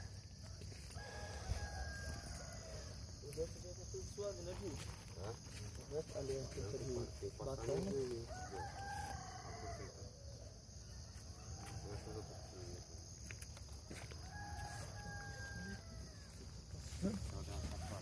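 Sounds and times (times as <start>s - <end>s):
rooster crowing: 0.0s - 3.4s, 8.0s - 13.2s, 13.8s - 18.0s.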